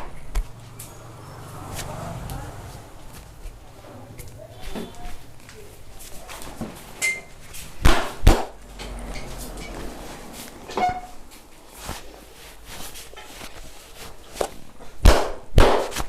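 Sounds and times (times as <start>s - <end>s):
massage smacks: 7.8s - 8.6s, 14.3s - 16.0s.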